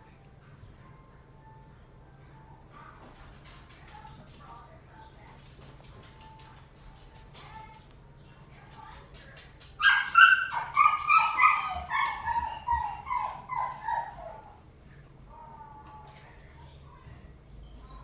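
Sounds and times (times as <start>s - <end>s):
animal yelping: 9.8s - 14.6s.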